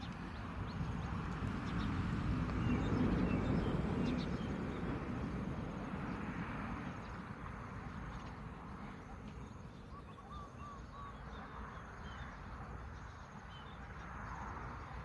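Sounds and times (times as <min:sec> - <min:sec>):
faint bird chirps: 0:08.2 - 0:13.8.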